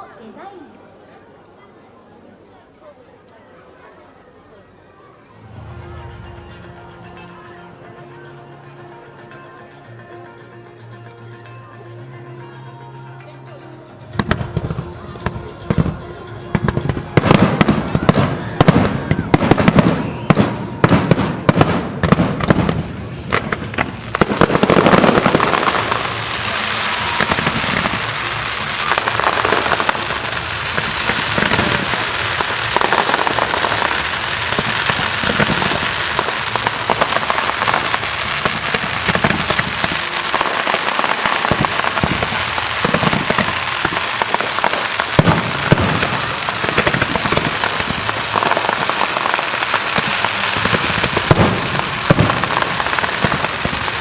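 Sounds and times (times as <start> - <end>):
fireworks crackling: 5.0 - 54.0
loud firework bursts: 14.2 - 54.0.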